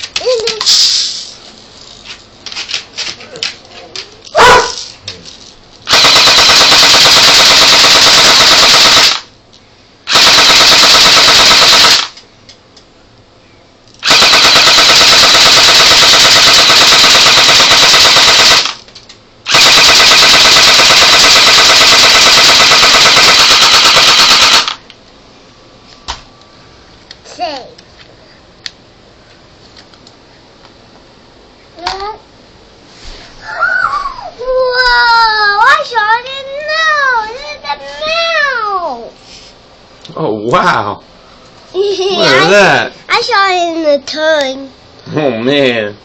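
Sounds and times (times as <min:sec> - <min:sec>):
airsoft gun firing bursts: 0:05.9 - 0:09.3, 0:10.1 - 0:12.2, 0:14.0 - 0:18.8, 0:19.5 - 0:24.8.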